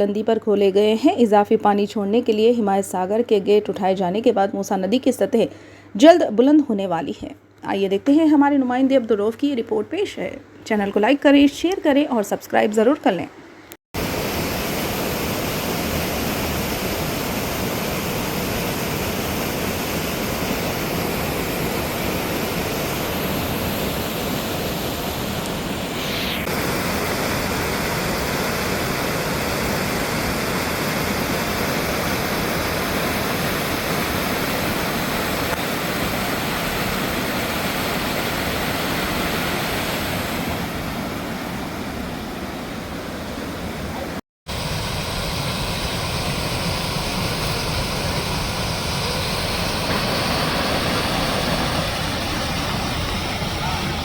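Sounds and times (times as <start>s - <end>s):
water gushing through dam gates: 14.0s - 54.0s.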